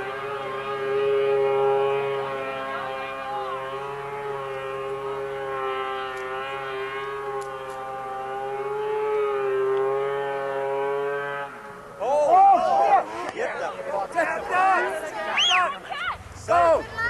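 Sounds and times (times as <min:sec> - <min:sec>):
steady droning tone: 0:00.0 - 0:17.0.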